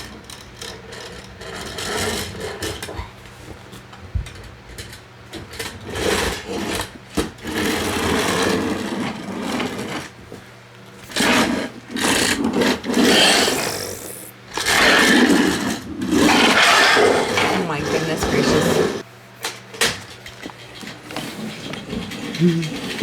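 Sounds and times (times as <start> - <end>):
toy motor and gears whirring: 12.0 - 15.5.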